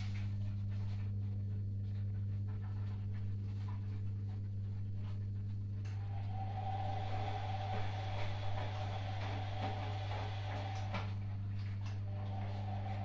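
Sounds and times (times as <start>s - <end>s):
washing machine humming: 0.0s - 13.0s
high-pitched whine: 5.8s - 11.1s, 12.0s - 13.0s.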